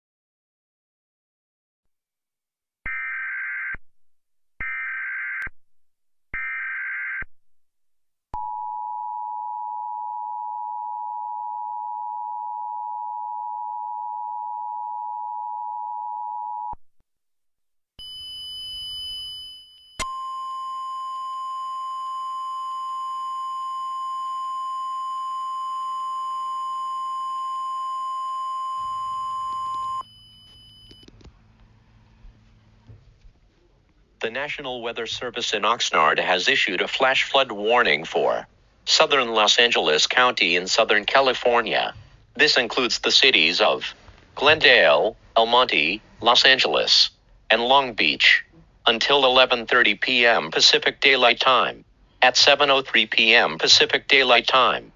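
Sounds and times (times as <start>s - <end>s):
two-tone attention signal: 18.0s - 31.1s.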